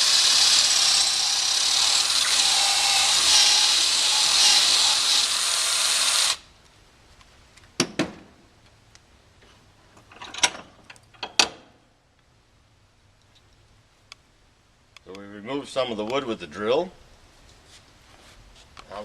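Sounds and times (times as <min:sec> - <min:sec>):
electric drill boring wood: 0:00.0 - 0:06.5.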